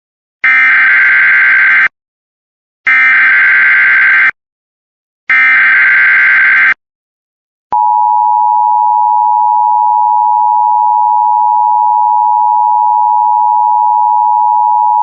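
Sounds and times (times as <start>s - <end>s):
two-tone alarm signal: 0.4s - 1.9s, 2.9s - 4.4s, 5.3s - 6.8s, 7.8s - 15.0s.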